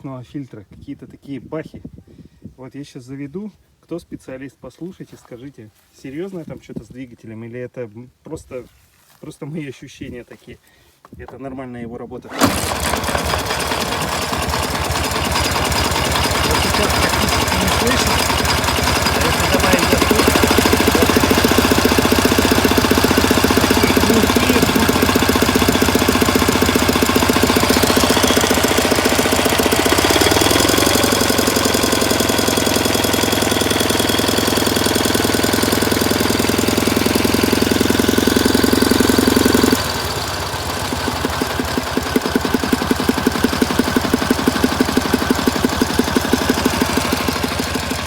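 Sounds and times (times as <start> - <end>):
engine knocking bangs: 12.3 - 48.0
motorcycle engine revving: 12.3 - 48.0.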